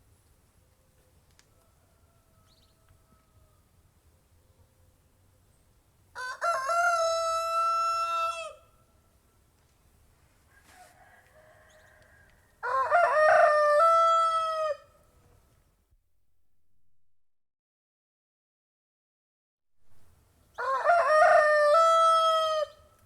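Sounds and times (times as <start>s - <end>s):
rooster crowing: 1.5s - 3.7s, 6.2s - 8.7s, 10.5s - 15.0s, 20.6s - 22.9s
faint short chicken call: 10.4s - 12.4s.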